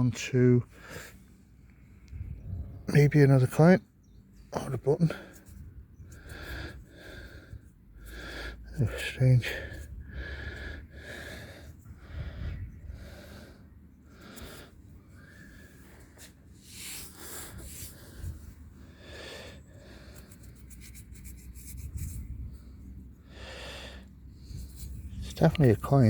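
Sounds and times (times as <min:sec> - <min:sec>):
hand rubbing a coin: 0:05.0 - 0:06.4, 0:15.7 - 0:18.7, 0:19.4 - 0:23.2, 0:24.5 - 0:26.0
breathing close to microphone: 0:05.1 - 0:08.7, 0:09.6 - 0:25.3.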